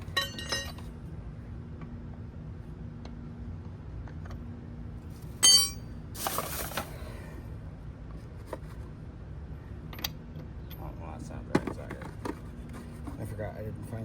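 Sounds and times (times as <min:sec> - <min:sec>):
metal tools clinking: 0:00.0 - 0:00.9, 0:05.4 - 0:06.7.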